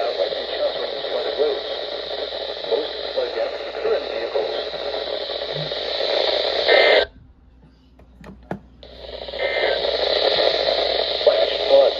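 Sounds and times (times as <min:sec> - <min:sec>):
radio static: 0:00.0 - 0:07.1, 0:08.8 - 0:11.9.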